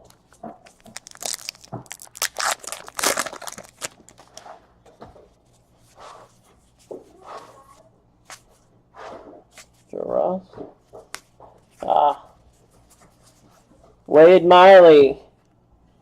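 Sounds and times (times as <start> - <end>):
cards rustling: 0.0 - 4.4
wrapper torn open and crinkled: 0.7 - 4.4.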